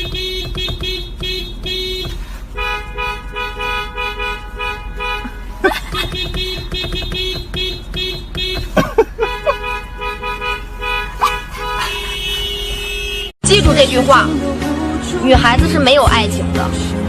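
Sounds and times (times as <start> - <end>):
car alarm pulsing tone: 0.0 - 13.3.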